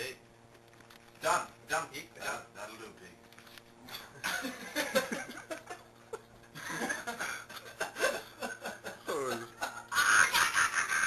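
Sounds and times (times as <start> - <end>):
steady low hum: 0.0 - 11.0
people laughing: 4.2 - 11.0.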